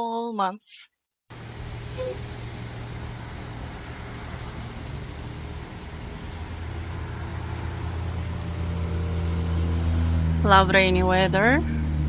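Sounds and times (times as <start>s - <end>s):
street hiss: 1.3s - 10.4s
vehicle engine humming: 1.3s - 12.0s.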